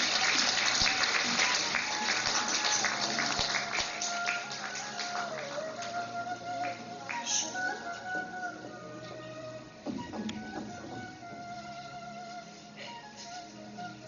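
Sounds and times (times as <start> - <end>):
audience applauding: 0.0 - 7.5
recorded music with held melody: 0.0 - 14.0.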